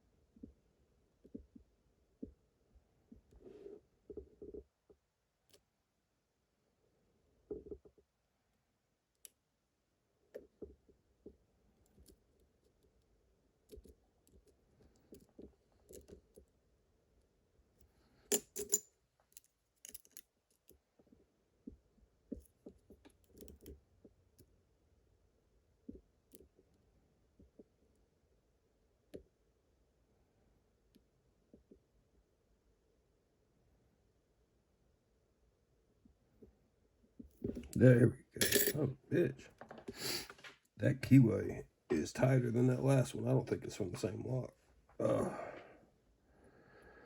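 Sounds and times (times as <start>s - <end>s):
lock pick clicking and scraping: 18.3s - 20.2s.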